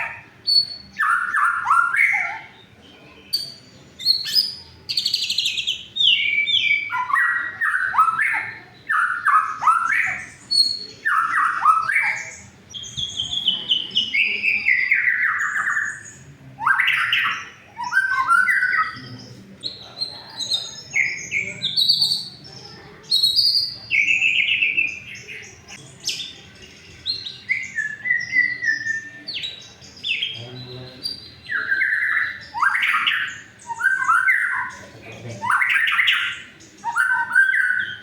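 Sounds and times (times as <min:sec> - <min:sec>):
bird singing whistles: 0:03.2 - 0:19.2, 0:27.0 - 0:34.8, 0:35.4 - 0:38.0.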